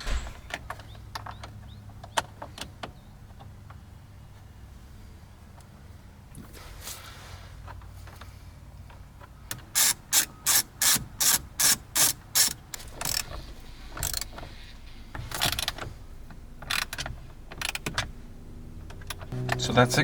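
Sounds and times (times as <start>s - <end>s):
ratchet wrench clicking: 9.7s - 13.3s, 14.0s - 14.4s.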